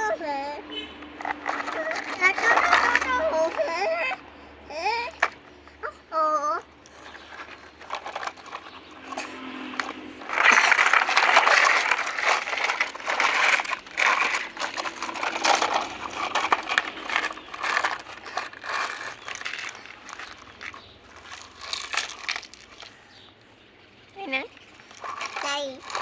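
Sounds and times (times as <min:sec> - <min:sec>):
crinkling and rustling: 0:01.0 - 0:05.8, 0:06.7 - 0:23.5, 0:24.1 - 0:26.0.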